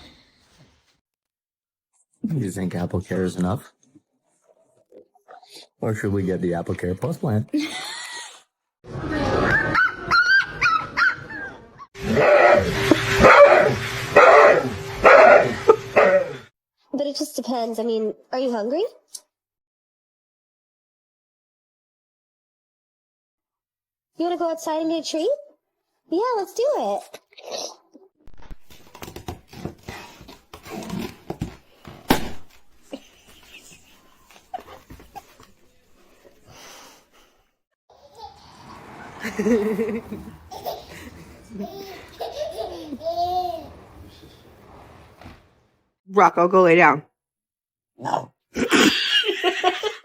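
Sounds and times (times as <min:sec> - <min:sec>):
dog whining: 0:09.9 - 0:16.5
dog barking: 0:12.0 - 0:16.4.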